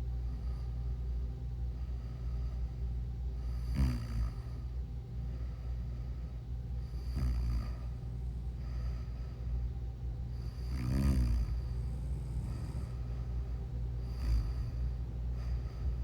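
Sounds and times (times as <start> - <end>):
steady low hum: 0.0 - 16.0
person snoring: 3.6 - 4.4, 6.9 - 8.3, 10.4 - 13.1, 14.0 - 14.8.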